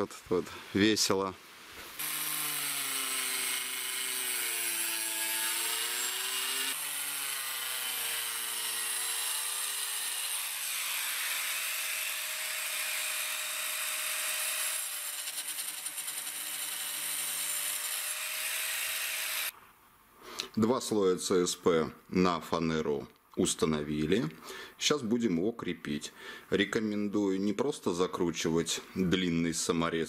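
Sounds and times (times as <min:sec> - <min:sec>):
angle grinder cutting board: 0:01.9 - 0:19.5.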